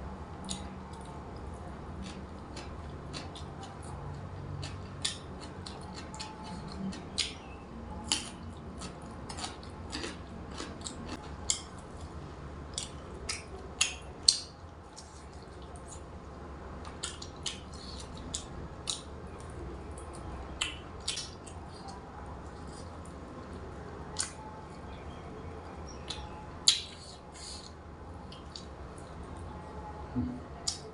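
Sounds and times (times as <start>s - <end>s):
chewing and crunching: 0.4s - 12.1s, 12.7s - 16.1s, 16.8s - 29.6s.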